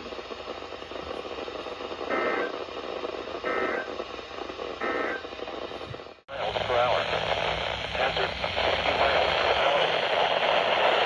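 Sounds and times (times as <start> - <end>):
radio static hiss: 0.0 - 11.0
warbling data tone bursts: 4.8 - 5.4.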